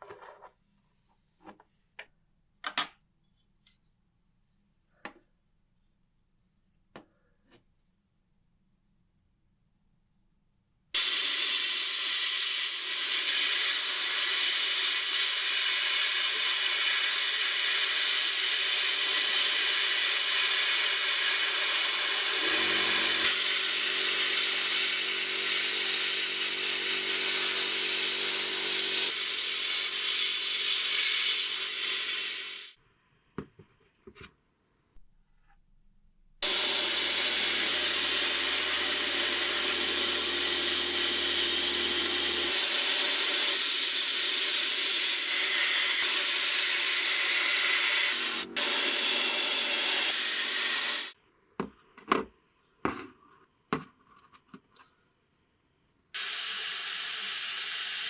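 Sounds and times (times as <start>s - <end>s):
compressed air hissing: 56.2s - 58.0s.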